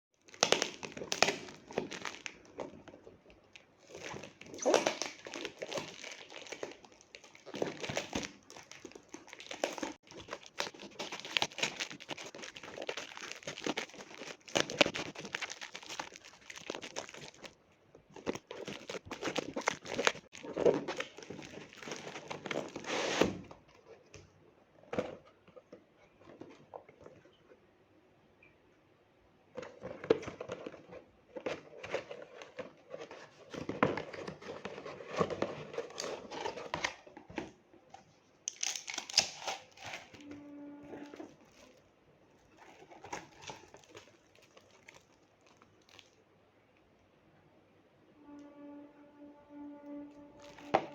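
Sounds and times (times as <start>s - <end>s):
packaging crinkling and tearing: 0.2s - 23.9s, 29.6s - 37.6s, 38.5s - 46.2s, 49.8s - 50.9s.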